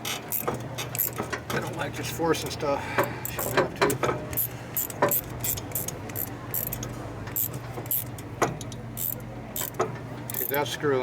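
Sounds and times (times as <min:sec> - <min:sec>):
metallic clicks of hand tools: 0:03.3 - 0:10.6.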